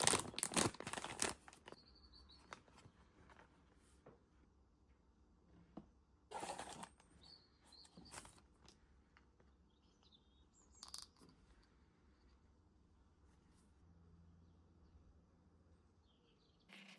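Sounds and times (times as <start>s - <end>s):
packaging rustling: 0.0s - 1.8s.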